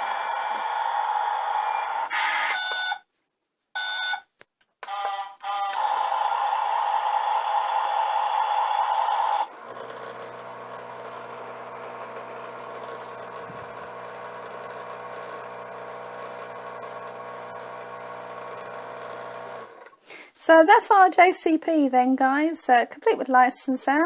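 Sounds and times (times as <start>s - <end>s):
toy electronic sound effect: 1.0s - 3.0s, 4.8s - 9.5s
toy motor buzzing: 4.9s - 11.7s.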